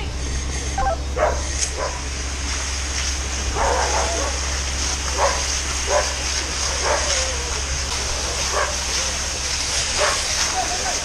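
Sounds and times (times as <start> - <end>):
low hum: 0.0 - 11.0
dog barking: 1.2 - 2.0, 3.5 - 4.4, 5.1 - 6.2, 6.8 - 7.2, 10.0 - 10.2.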